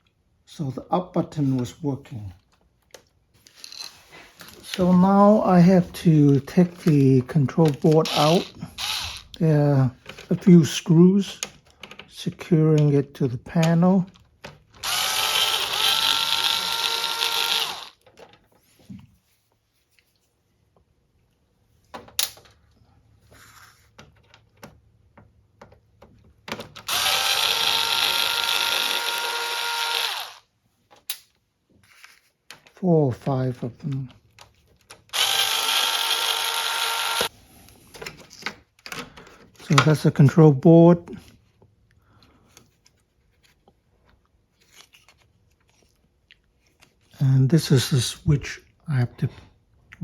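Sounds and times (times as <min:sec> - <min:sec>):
power screwdriver running: 0:07.9 - 0:09.4, 0:14.8 - 0:18.0, 0:26.8 - 0:30.5, 0:35.1 - 0:37.3.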